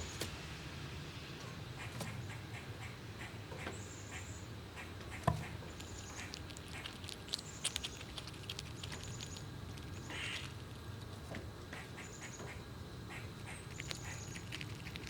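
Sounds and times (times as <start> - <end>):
squirrels cracking nuts: 5.0 - 15.0.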